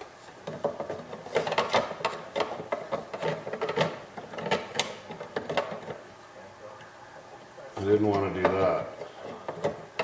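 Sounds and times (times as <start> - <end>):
plastic rubbing: 0.3 - 6.1.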